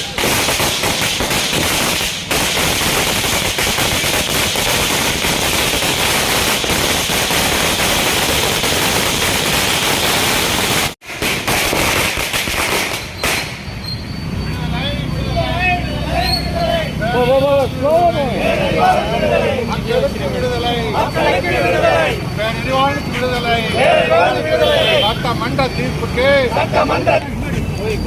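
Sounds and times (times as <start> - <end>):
firecrackers crackling: 0.0 - 13.9.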